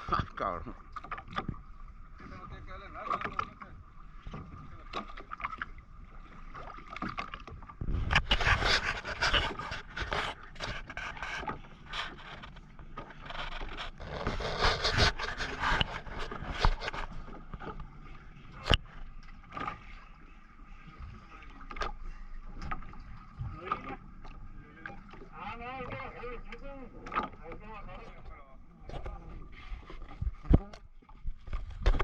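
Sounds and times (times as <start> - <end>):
scraping on a boat: 0.8 - 32.0
rough noisy rubbing: 7.9 - 17.8.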